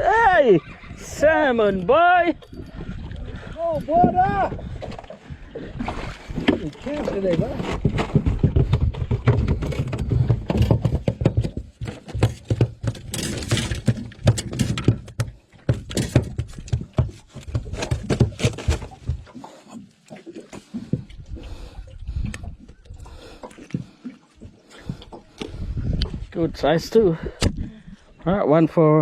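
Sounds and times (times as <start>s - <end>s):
fish flapping on boat floor: 7.4s - 19.4s.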